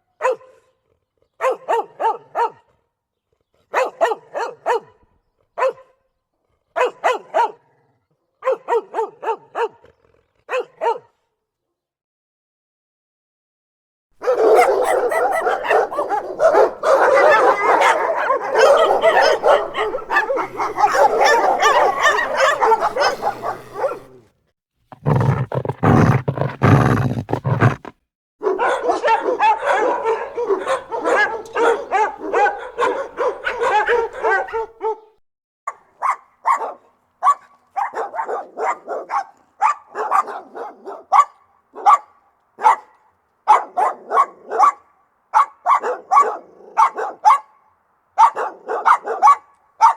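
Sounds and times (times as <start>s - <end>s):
dog barking aggressively: 14.2s - 24.2s, 24.9s - 35.1s, 36.0s - 42.9s, 43.5s - 44.8s, 45.4s - 47.5s, 48.2s - 49.9s.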